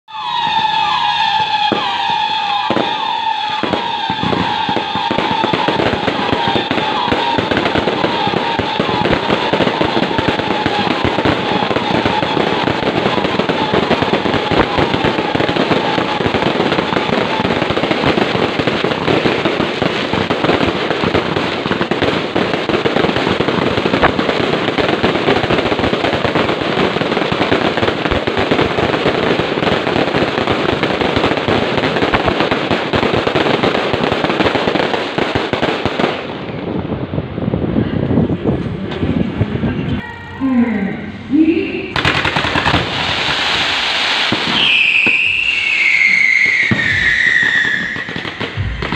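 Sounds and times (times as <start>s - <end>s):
falling firework whistles: 0.1s - 19.5s, 41.9s - 48.9s
fireworks crackling bangs: 0.1s - 39.8s, 41.4s - 48.9s.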